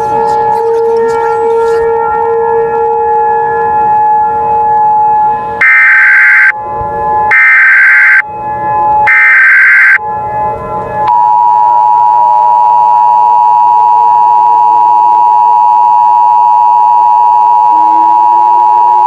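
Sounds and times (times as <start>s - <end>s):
two-tone alert alarm: 5.6s - 6.6s, 7.3s - 8.3s, 9.0s - 10.0s.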